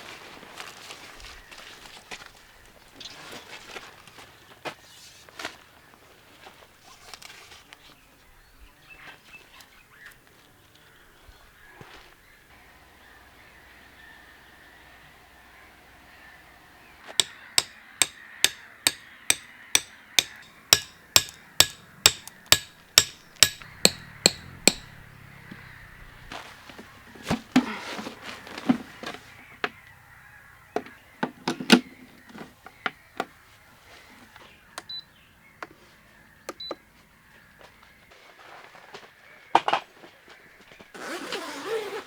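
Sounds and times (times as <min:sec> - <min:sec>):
ringing hammer blows: 0:17.1 - 0:25.2.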